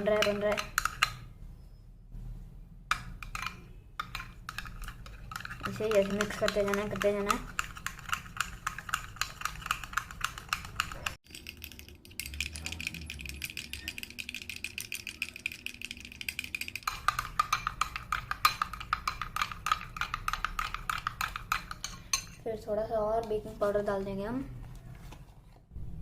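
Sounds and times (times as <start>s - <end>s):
spoon tapping glass bowl: 0.0s - 1.3s, 12.2s - 22.4s
spoon stirring slime in glass bowl: 0.0s - 1.4s, 2.9s - 24.2s.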